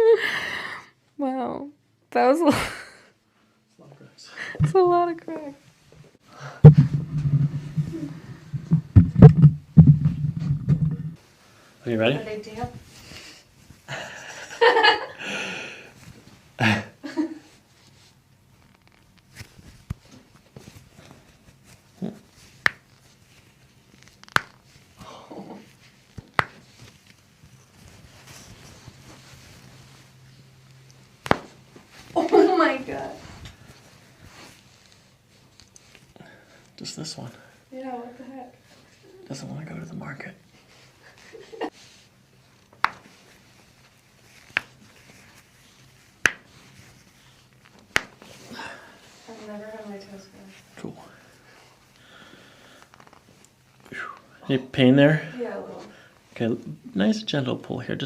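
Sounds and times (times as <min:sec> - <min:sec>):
soft thump: 0:06.6 - 0:08.0, 0:08.6 - 0:11.2
toe joints cracking: 0:23.9 - 0:24.7.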